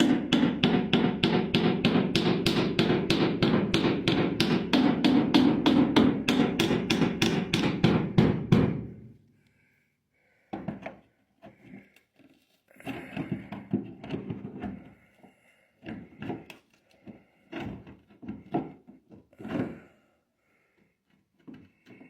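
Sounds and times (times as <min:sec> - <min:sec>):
pliers hammering sheet metal: 0:00.0 - 0:09.1.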